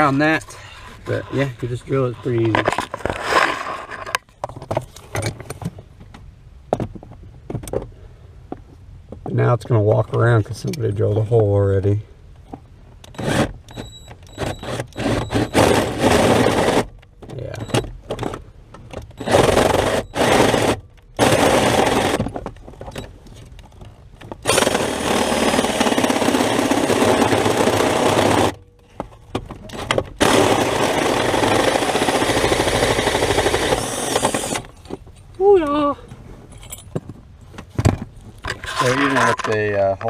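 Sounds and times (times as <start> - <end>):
drill with hole saw cutting: 13.1 - 16.9, 19.2 - 22.2, 24.4 - 28.6, 29.8 - 34.7.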